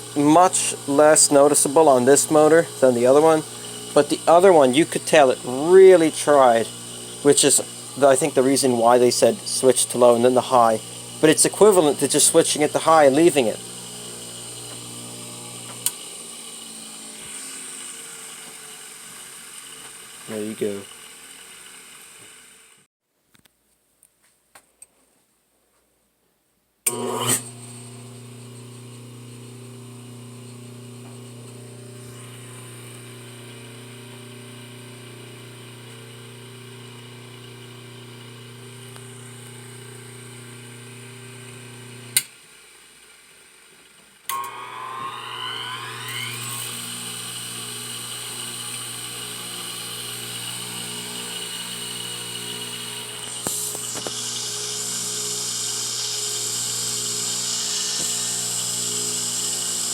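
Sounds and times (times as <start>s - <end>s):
electric motor hum: 0.0s - 22.9s, 26.9s - 42.3s, 44.3s - 59.9s
motor whine winding up: 0.0s - 22.9s, 26.9s - 42.3s, 44.3s - 59.9s.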